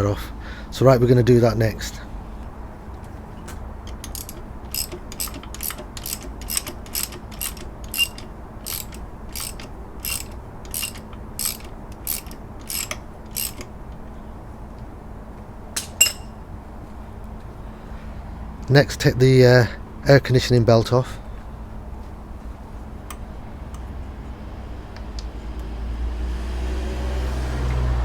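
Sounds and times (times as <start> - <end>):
ratchet wrench clicking: 3.8 - 13.8, 15.8 - 16.4.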